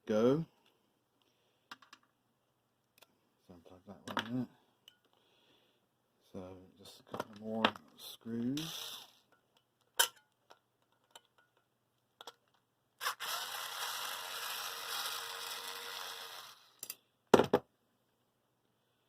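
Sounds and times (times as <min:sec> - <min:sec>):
screwdriver whirring: 0:13.0 - 0:16.9.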